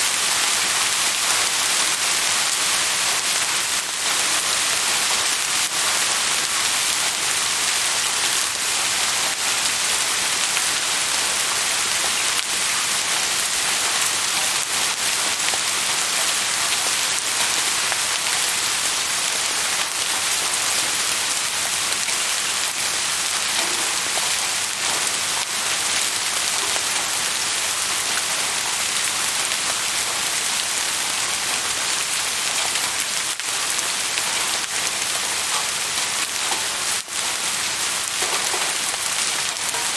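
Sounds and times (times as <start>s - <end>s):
steady rain hiss: 0.0s - 39.9s
rain drop ticks: 23.5s - 25.5s.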